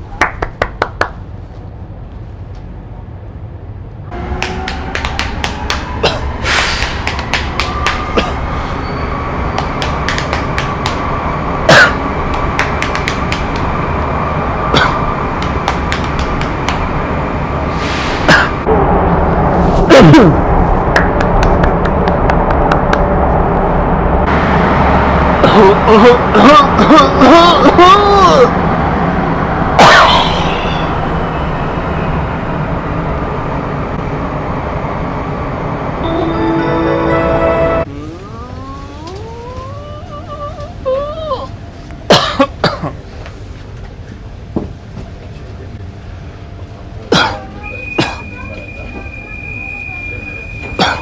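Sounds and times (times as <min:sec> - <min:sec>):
metro train rumble and whine: 0:00.0 - 0:51.0
person fake coughing: 0:06.0 - 0:06.3, 0:08.1 - 0:08.4, 0:11.7 - 0:12.1, 0:14.7 - 0:15.0, 0:25.4 - 0:28.0, 0:42.1 - 0:43.0, 0:47.1 - 0:48.3, 0:50.8 - 0:51.0
steady tones: 0:35.8 - 0:38.6.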